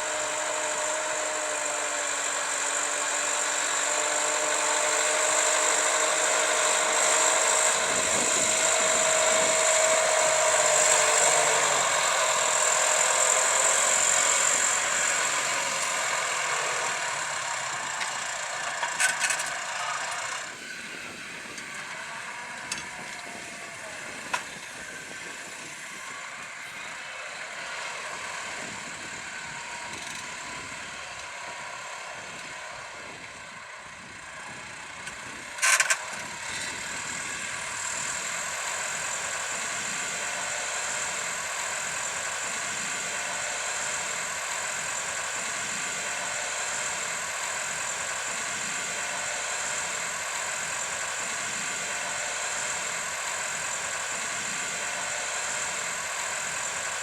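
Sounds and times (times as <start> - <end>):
diesel tractor engine running: 0.0 - 57.0.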